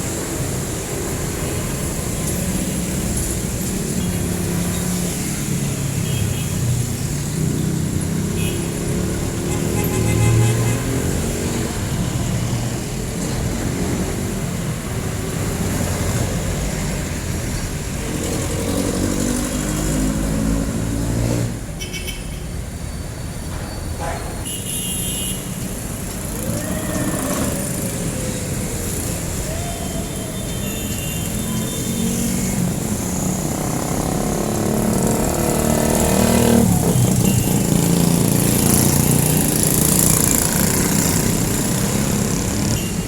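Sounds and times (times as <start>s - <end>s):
vehicle engines passing: 0.0s - 43.0s.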